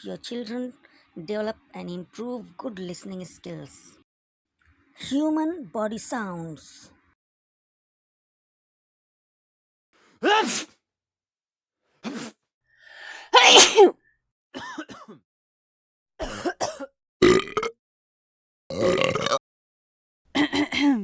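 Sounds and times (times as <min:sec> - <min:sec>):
person sneezing: 0:10.2 - 0:10.7, 0:13.3 - 0:13.9
intake of breath: 0:12.7 - 0:13.4.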